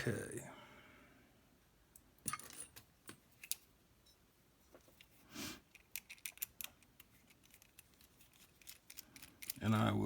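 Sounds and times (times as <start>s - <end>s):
small metal clicks and taps: 5.7s - 9.6s.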